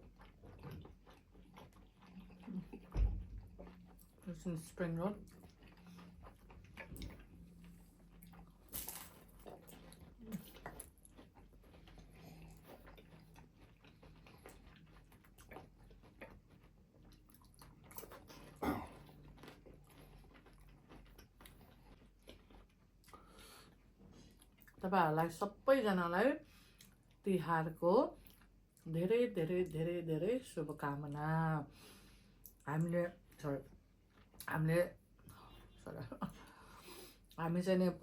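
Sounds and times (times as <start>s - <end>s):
biting and chewing food: 0.0s - 24.8s.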